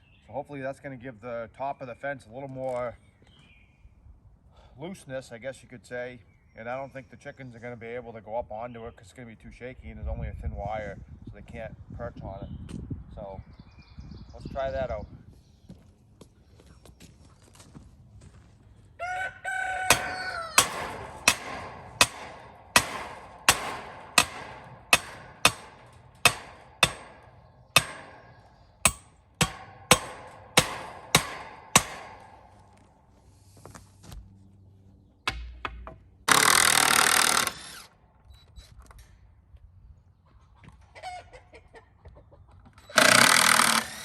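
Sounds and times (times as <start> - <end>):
post driver striking metal post: 19.9 - 32.8, 35.3 - 37.8, 42.9 - 44.0.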